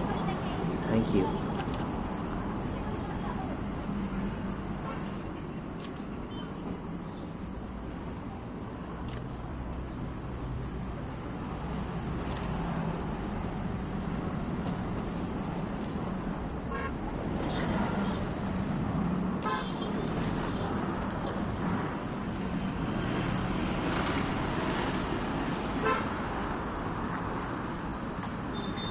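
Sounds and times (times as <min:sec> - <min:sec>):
road traffic passing: 0:00.0 - 0:28.9
vehicle horns tooting: 0:28.5 - 0:28.9.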